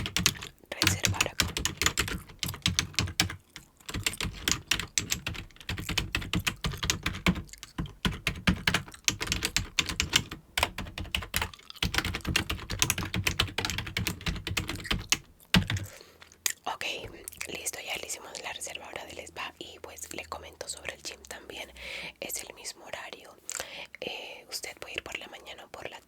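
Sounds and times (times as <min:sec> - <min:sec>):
fast typing on keyboard: 0:00.0 - 0:16.0.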